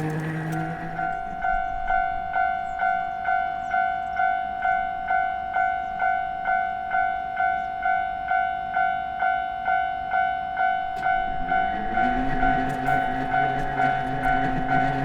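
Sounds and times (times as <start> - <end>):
train rumble: 0.0 - 6.6, 10.6 - 15.0.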